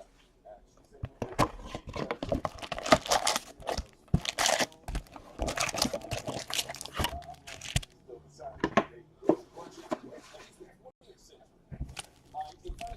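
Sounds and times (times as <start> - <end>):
plastic wrapping tearing and crinkling: 1.9 - 7.9.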